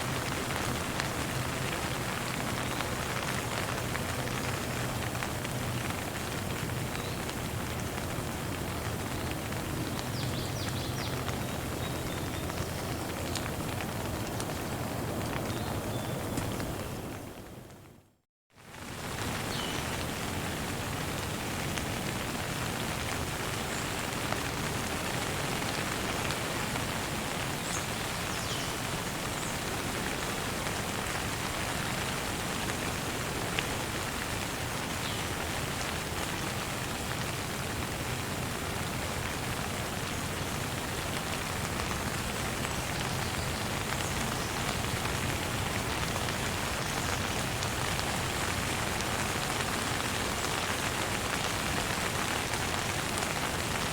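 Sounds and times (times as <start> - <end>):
steady rain falling: 0.0 - 53.9.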